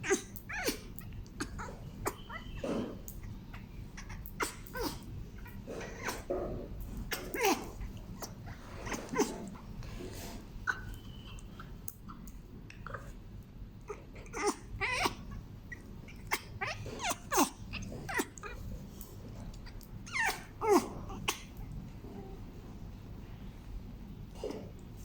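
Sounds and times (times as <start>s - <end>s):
dog whining cries: 0.0s - 6.4s, 14.2s - 18.6s, 19.6s - 21.4s.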